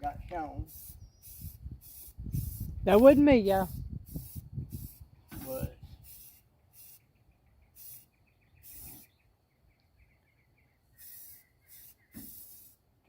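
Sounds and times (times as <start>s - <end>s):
aerosol spray paint hissing: 0.6s - 7.0s, 7.8s - 9.1s, 11.0s - 12.8s
faint rapid chirping: 0.7s - 2.8s, 6.0s - 12.8s.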